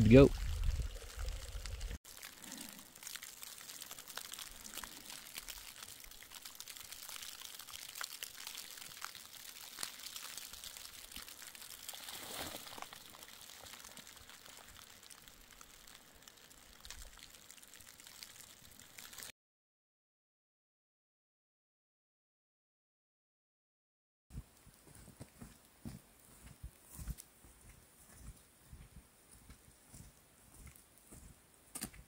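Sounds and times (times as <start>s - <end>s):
snowflakes ticking: 0.0s - 19.3s
hiss of falling snow: 0.7s - 19.3s.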